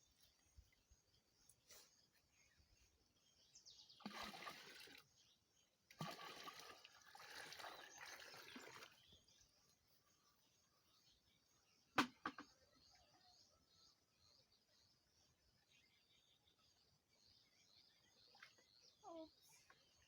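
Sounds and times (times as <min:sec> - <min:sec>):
water splashing into a container: 0:03.9 - 0:05.2, 0:05.9 - 0:09.3.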